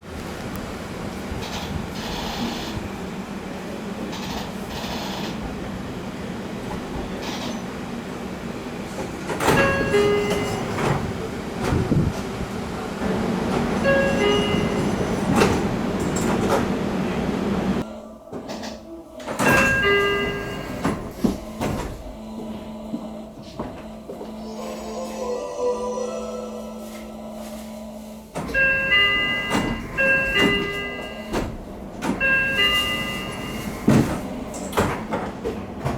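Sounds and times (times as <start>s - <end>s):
train equipment hum: 0.0s - 35.9s
multi-tone door chime: 9.5s - 10.9s, 13.8s - 15.5s, 19.4s - 21.2s, 28.5s - 31.6s, 32.2s - 33.8s.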